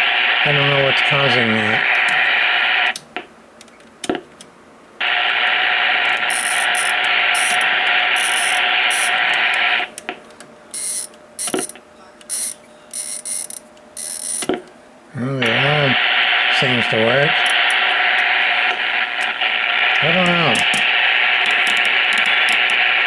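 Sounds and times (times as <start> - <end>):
radio receiver static: 0.0 - 3.0, 5.0 - 10.0, 10.7 - 14.5, 15.2 - 23.0
high-pitched alarm bursts: 6.1 - 9.2, 10.8 - 11.7, 12.3 - 14.4
sharp clicks: 6.1 - 14.6.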